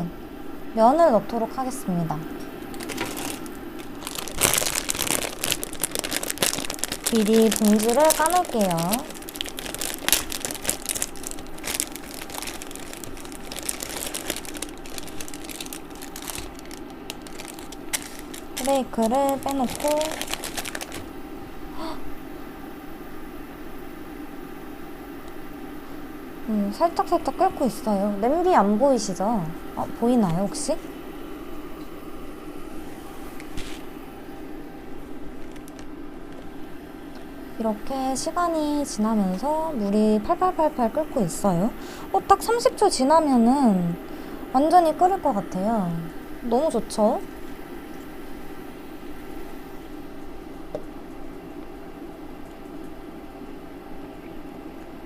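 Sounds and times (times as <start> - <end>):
plastic wrapper crinkling: 2.7 - 21.1, 33.4 - 33.9, 35.1 - 37.2
water boiling in a pot: 2.8 - 13.8.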